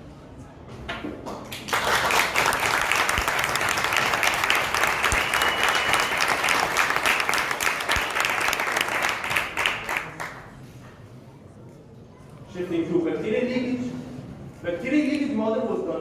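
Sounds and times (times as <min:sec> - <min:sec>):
audience applause: 0:01.6 - 0:10.5.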